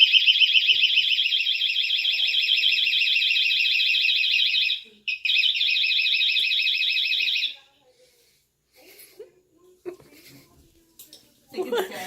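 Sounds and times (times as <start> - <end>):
electronic alarm warbling: 0.0 - 7.5.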